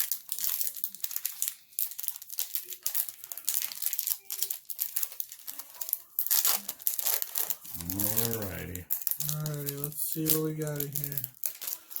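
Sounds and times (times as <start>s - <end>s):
foil wrapper tearing and crinkling: 0.0s - 7.7s, 8.9s - 12.0s.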